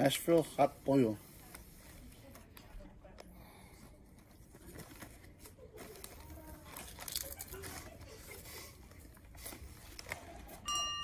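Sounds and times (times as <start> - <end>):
chip bag crinkling: 4.6 - 8.4
potato chips crunching: 6.7 - 7.9.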